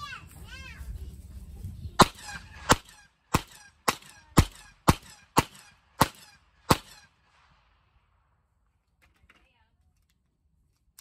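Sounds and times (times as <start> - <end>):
gunshots with ringing echo: 2.0 - 8.0.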